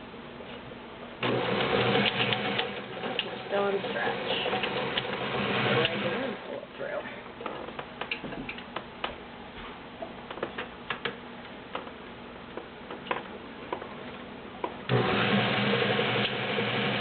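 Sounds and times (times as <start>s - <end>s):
sewing machine sewing: 1.2s - 6.4s.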